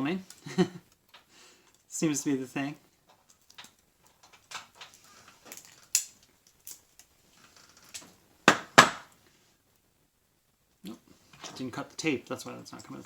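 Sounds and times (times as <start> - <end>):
light clicks and scrapes: 3.1 - 8.2, 11.2 - 13.0.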